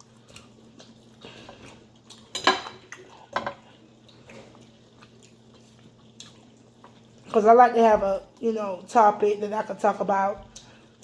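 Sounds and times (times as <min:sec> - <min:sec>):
cutlery clinking on plates: 0:02.3 - 0:03.6.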